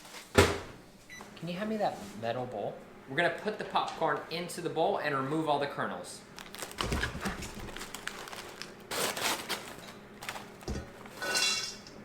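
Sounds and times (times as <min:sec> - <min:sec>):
paper bags crinkling: 0:06.3 - 0:11.2.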